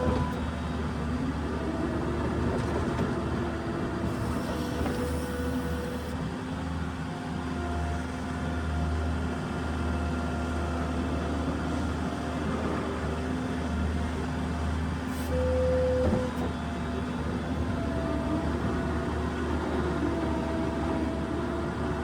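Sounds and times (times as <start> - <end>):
diesel engine running: 10.9 - 22.0.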